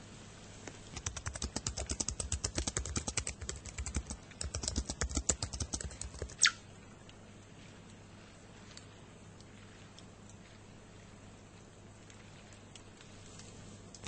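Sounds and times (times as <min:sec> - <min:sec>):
rapid clicking: 0:00.8 - 0:06.5.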